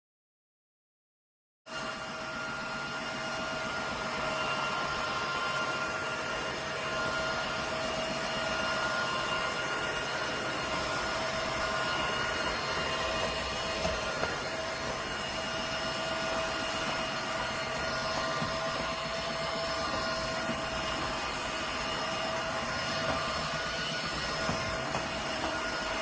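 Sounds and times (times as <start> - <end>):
vacuum cleaner running: 1.7 - 26.0.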